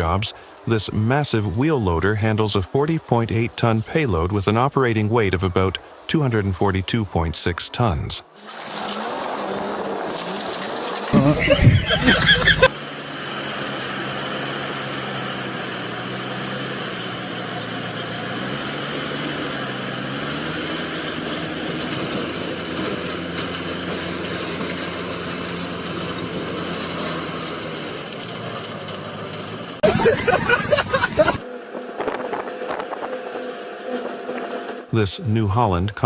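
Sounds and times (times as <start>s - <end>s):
diesel engine running: 7.9s - 36.0s.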